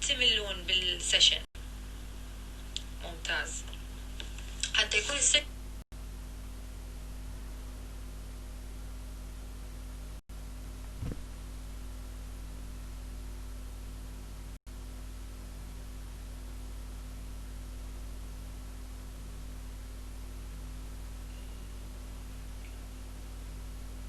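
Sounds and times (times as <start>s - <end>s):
low electrical hum: 0.0s - 24.0s
low thump: 10.9s - 11.4s.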